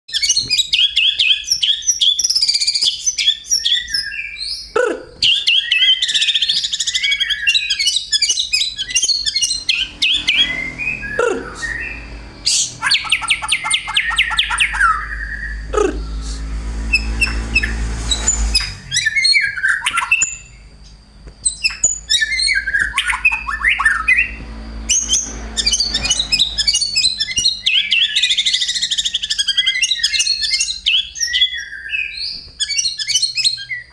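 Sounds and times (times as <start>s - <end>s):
bird song chirps and chatter: 0.1s - 33.9s
bird whistles gliding down: 0.1s - 33.9s.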